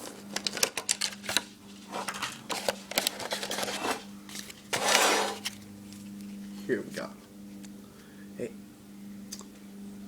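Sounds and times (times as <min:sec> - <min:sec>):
card packs clicking and rustling: 0:00.0 - 0:01.4, 0:02.0 - 0:05.6
steady low hum: 0:00.0 - 0:10.0.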